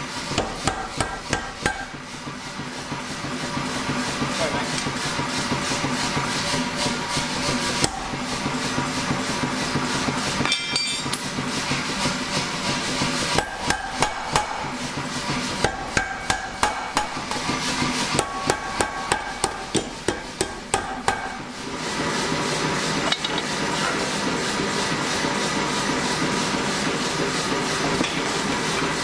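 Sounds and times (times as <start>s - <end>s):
hammer striking steel on anvil: 0.3s - 2.0s, 7.8s - 8.2s, 10.4s - 11.4s, 13.3s - 14.8s, 15.5s - 21.5s.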